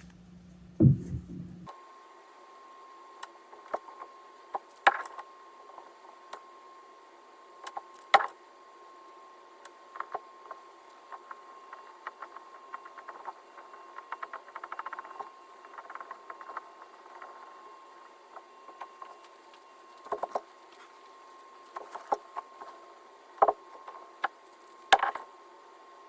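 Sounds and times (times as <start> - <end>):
knocks on a table: 0.8 - 1.7.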